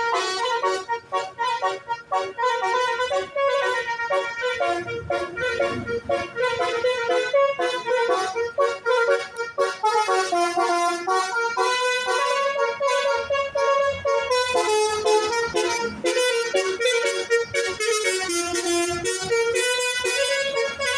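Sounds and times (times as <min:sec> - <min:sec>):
musical bus horn melody: 0:00.0 - 0:20.9.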